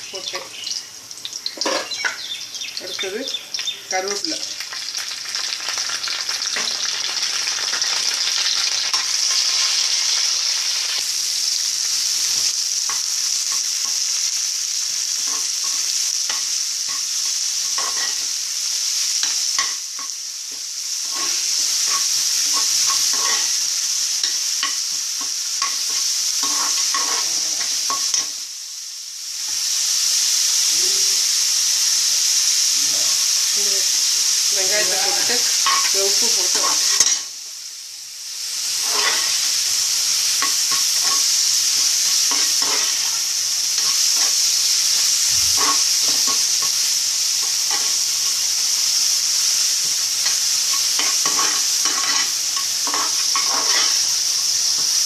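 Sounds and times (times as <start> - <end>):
spices sizzling in hot oil: 0.0 - 55.0
spatula scraping and tapping pan: 1.5 - 2.2, 15.2 - 18.3, 19.2 - 23.6, 24.2 - 28.4, 38.8 - 39.4, 40.4 - 43.2, 43.8 - 44.4, 45.5 - 46.8, 47.4 - 48.0, 50.2 - 54.1.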